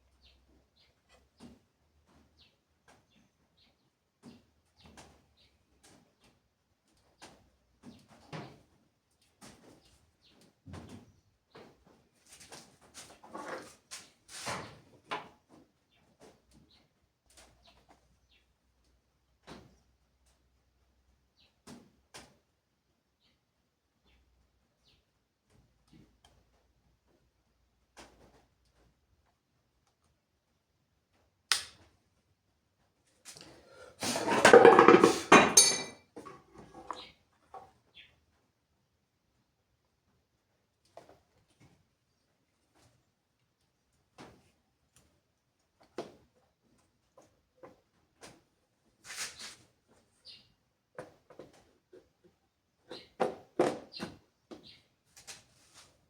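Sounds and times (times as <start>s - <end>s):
clatter of hard parts and tools: 34.0s - 37.7s.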